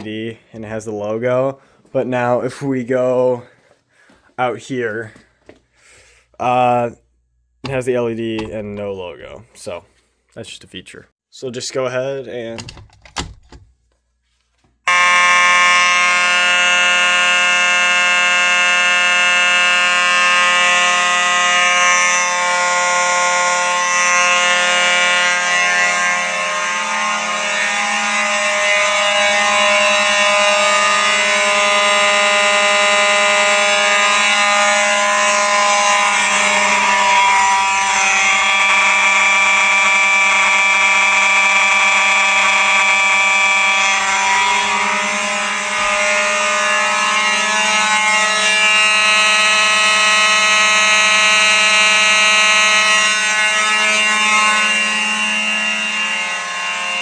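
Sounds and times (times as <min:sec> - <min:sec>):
fire alarm horns blaring: 0:14.8 - 0:57.0.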